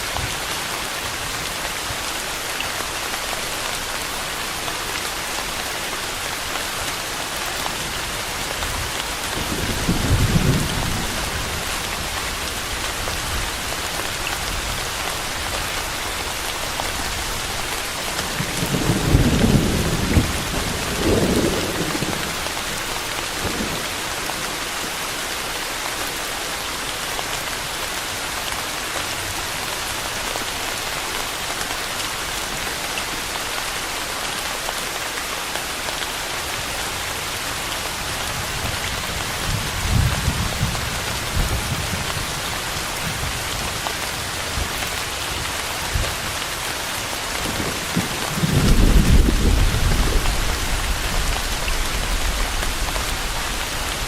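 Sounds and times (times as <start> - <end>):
heavy rain on surfaces: 0.0 - 54.0
thunder rumbling: 47.5 - 54.0.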